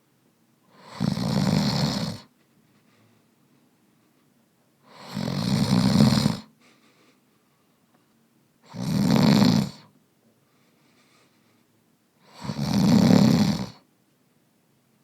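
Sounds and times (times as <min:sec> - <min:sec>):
man snoring: 0:00.7 - 0:02.3, 0:04.9 - 0:06.5, 0:08.7 - 0:09.9, 0:12.2 - 0:13.8.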